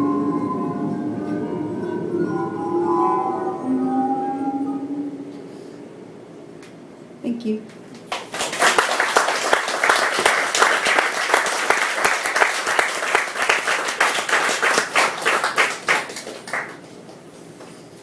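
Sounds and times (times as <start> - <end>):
audience applauding: 8.0 - 17.0.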